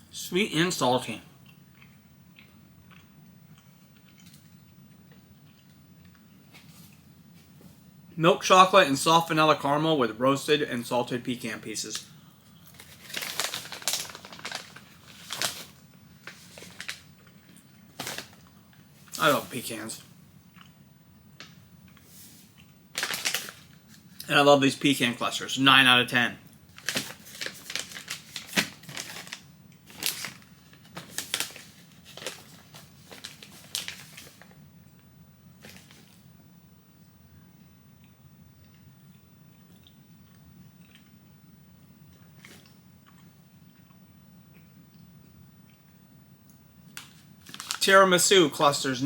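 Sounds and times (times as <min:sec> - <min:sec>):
packaging crinkling: 0:12.7 - 0:18.5, 0:22.9 - 0:24.2, 0:26.7 - 0:34.6, 0:35.6 - 0:36.2, 0:47.0 - 0:47.9.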